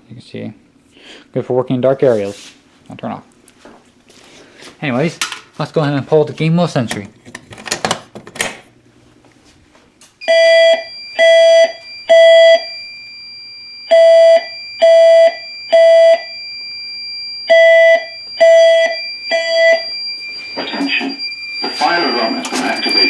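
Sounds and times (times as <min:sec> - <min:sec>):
fire alarm horns blasting: 0:10.2 - 0:23.0
steady high-pitched tone: 0:15.8 - 0:23.0.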